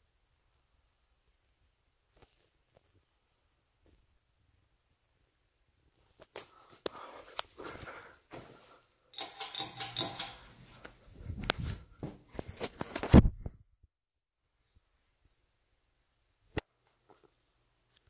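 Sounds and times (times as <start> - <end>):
clicks rustles and knocks: 9.2 - 10.5.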